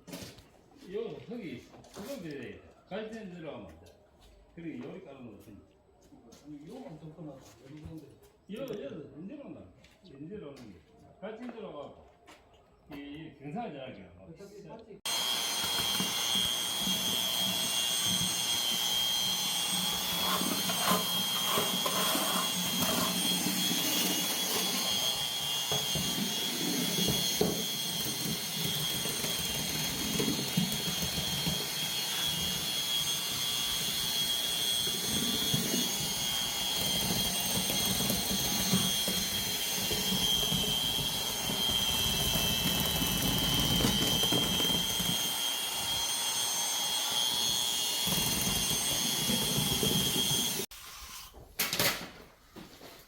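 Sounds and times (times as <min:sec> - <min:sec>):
machine whining and rumbling: 0:15.1 - 0:50.7.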